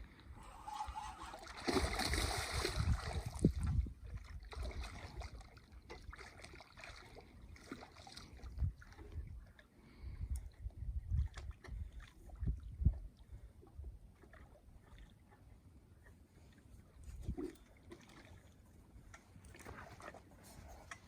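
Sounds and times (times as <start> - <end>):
wind rumble on microphone: 0.0 - 5.6, 8.2 - 14.2, 16.9 - 17.6
water splashing and sloshing: 0.0 - 21.0.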